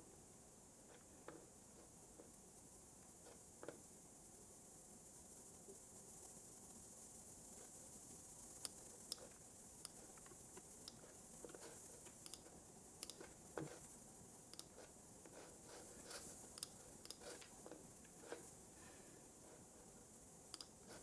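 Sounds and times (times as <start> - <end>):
soft steady hiss: 0.0 - 21.0
keyboard and mouse clicks: 13.0 - 13.3, 14.5 - 14.7, 20.5 - 20.7.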